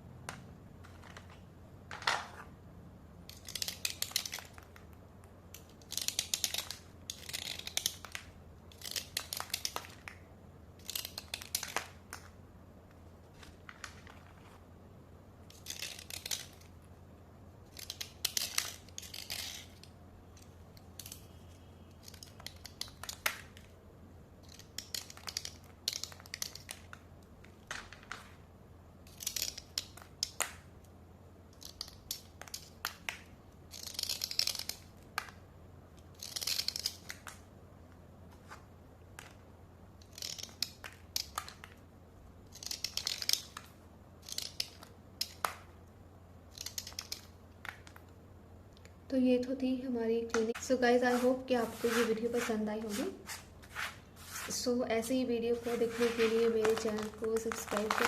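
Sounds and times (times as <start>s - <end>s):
slate pencils scraping: 50.4s - 54.7s, 55.5s - 58.0s.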